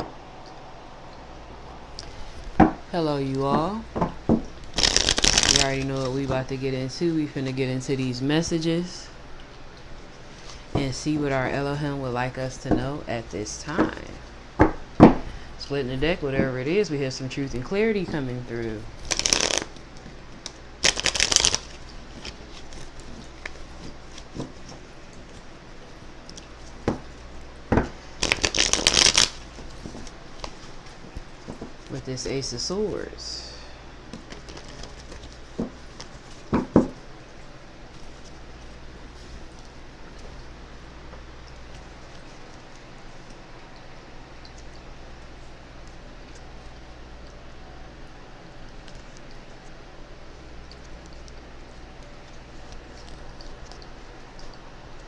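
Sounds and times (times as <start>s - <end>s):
background hiss: 0.0s - 44.8s
cards riffling: 4.2s - 6.4s, 18.5s - 25.5s, 28.0s - 32.0s, 34.1s - 36.6s.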